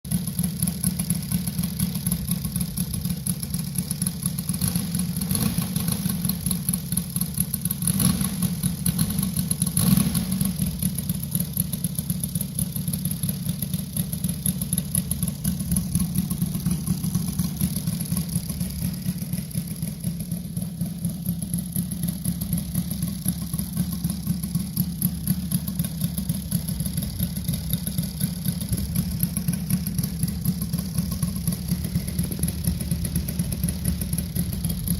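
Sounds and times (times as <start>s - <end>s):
model aircraft engine running: 0.1s - 34.9s.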